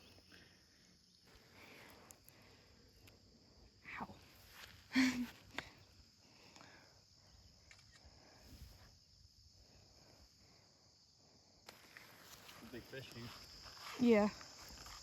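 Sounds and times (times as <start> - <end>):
insects buzzing: 0.0 - 15.0
small click: 7.6 - 8.1.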